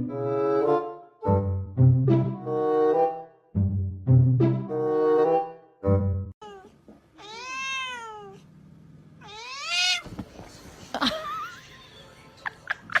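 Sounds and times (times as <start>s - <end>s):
cat meowing: 6.4s - 8.4s, 9.2s - 10.1s.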